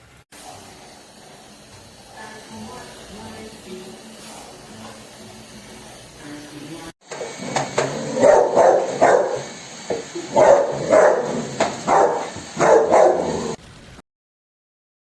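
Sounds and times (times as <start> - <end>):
dog barking: 7.8 - 9.5, 10.3 - 13.6.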